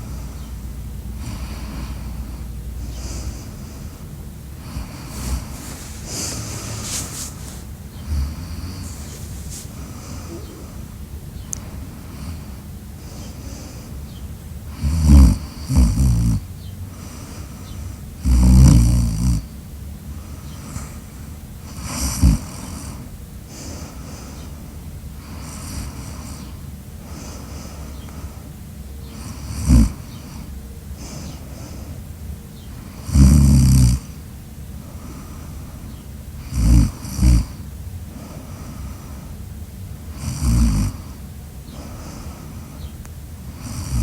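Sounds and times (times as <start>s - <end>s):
quiet breaths: 0.0s - 44.0s
person snoring loudly: 8.0s - 10.8s, 14.7s - 16.4s, 18.2s - 19.4s, 33.0s - 34.0s, 36.4s - 37.6s, 40.1s - 41.1s, 43.6s - 44.0s.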